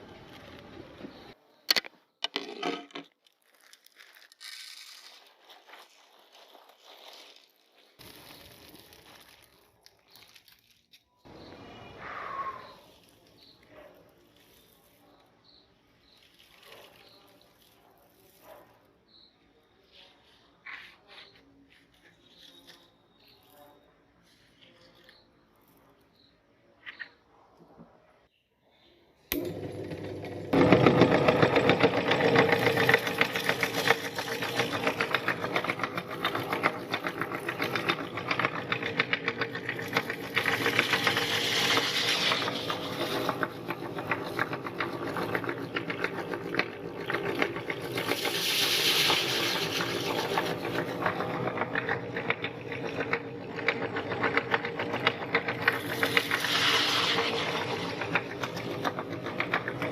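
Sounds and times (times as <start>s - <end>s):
crunching rattle of grinding: 0.2s - 11.7s, 12.6s - 20.0s, 20.6s - 27.2s, 30.5s - 59.9s
meat grinder motor hum: 29.3s - 59.9s.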